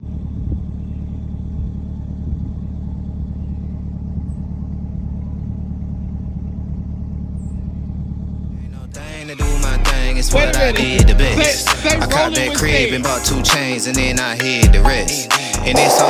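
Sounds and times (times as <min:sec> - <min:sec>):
car engine rumbling: 0:00.0 - 0:16.0.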